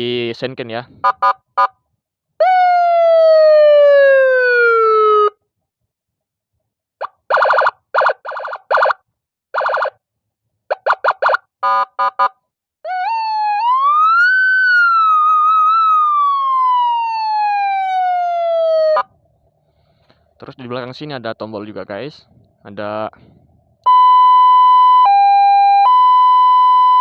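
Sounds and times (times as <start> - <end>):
electronic siren tones: 7.0 - 9.0, 9.6 - 10.0, 10.7 - 12.3, 23.8 - 27.0.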